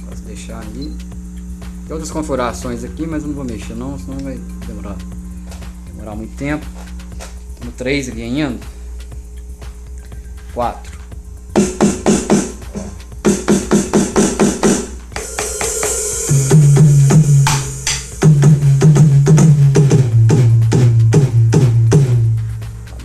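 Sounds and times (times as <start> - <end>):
deep sustained bass tone: 0.0 - 11.6, 15.9 - 23.0
electronic drum hits: 11.5 - 23.0
cymbal crash: 11.6 - 18.4.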